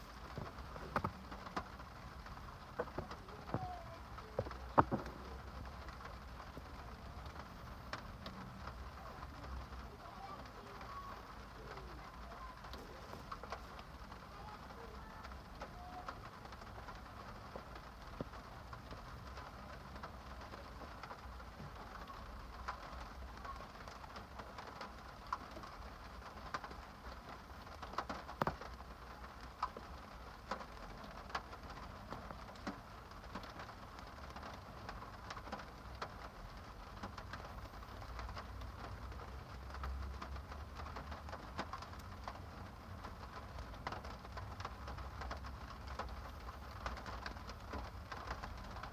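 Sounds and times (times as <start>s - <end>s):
raindrops ticking on a surface: 0.0s - 48.9s
steady rain falling: 0.0s - 48.9s.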